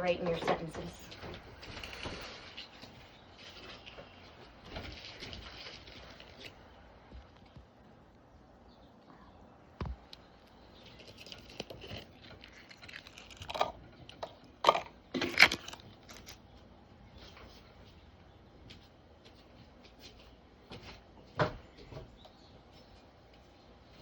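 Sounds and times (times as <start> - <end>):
papers rustling: 0.2 - 7.5.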